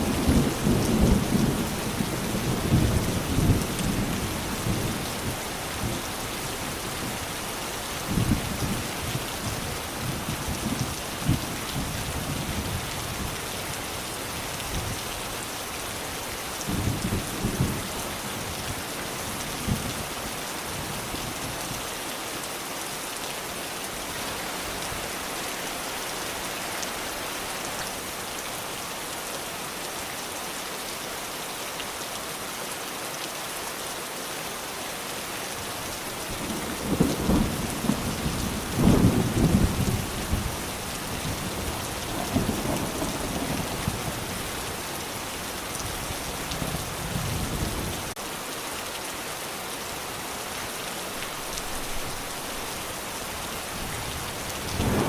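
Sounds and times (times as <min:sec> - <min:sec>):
steady rain hissing: 0:00.0 - 0:55.0
thunder rolling: 0:54.7 - 0:55.0.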